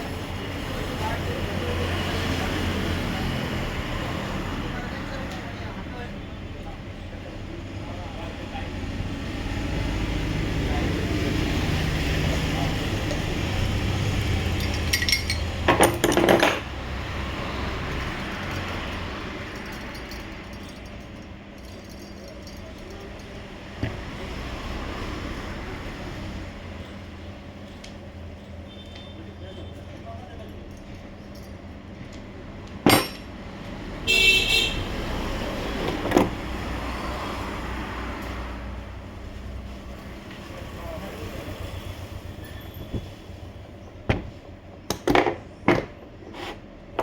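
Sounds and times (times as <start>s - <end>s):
metal objects clinking: 14.2s - 16.7s, 18.0s - 24.2s, 32.8s - 33.3s
vehicle horn honk: 28.7s - 29.6s, 34.0s - 34.9s
sharp metallic knocks: 32.8s - 33.4s.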